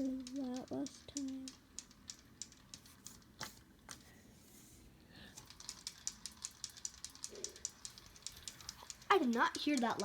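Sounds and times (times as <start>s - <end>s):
ceiling fan clicking: 0.0s - 4.2s, 5.3s - 10.0s
quick even ticking: 5.4s - 10.0s.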